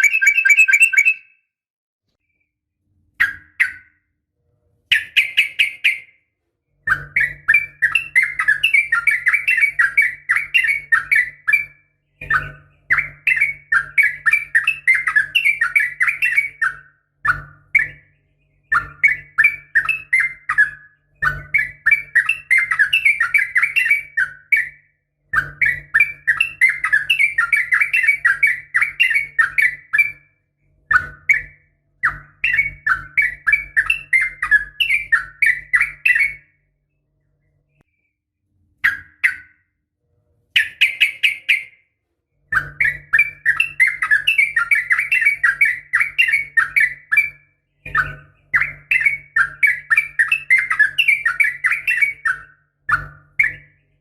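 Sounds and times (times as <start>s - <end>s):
bird chattering call: 0.0s - 1.3s.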